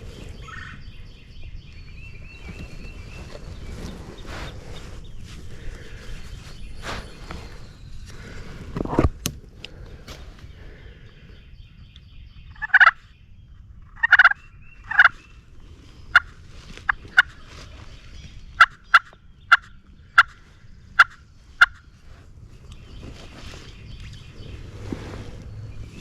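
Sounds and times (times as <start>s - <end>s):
wild turkey gobbling: 12.5s - 13.0s, 13.8s - 15.2s, 16.1s - 17.5s, 18.6s - 22.0s.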